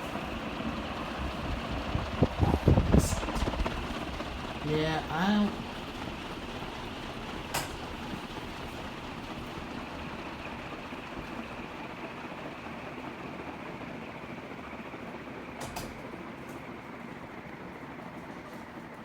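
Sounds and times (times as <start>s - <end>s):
ceiling fan air rushing: 0.0s - 19.0s
fan click: 7.3s - 8.2s, 15.6s - 16.6s.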